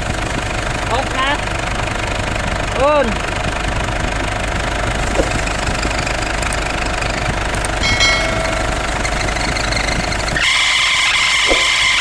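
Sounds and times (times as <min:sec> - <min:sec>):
car engine running: 0:00.0 - 0:12.0
metallic ring: 0:07.8 - 0:10.2.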